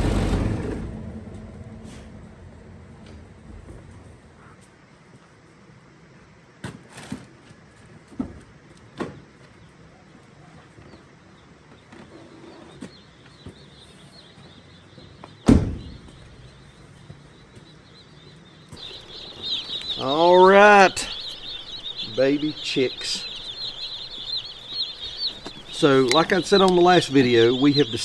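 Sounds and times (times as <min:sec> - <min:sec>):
chicks peeping: 0:09.4 - 0:28.0.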